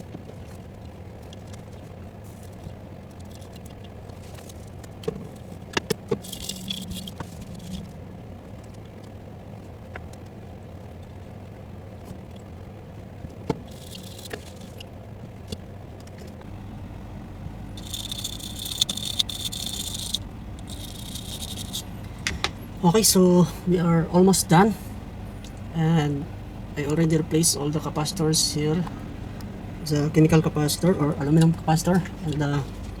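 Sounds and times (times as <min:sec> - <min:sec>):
low steady hum: 0:00.0 - 0:33.0
tool clicks and scrapes: 0:06.1 - 0:07.8, 0:13.7 - 0:14.8, 0:17.8 - 0:22.6.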